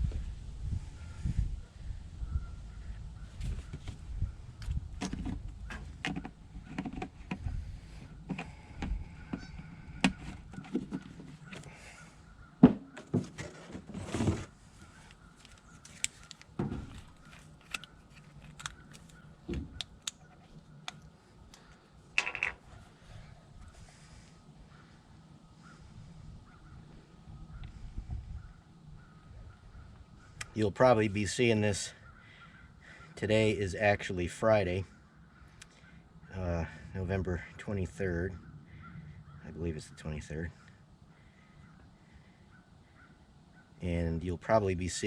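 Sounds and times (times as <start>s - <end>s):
handling knocks and clunks: 4.7s - 7.6s, 8.2s - 11.7s, 12.6s - 14.6s, 16.6s - 17.8s.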